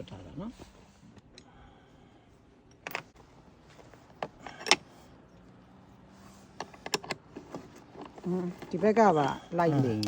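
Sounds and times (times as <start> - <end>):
tools and metal parts clanking: 2.7 - 3.2, 4.1 - 5.0.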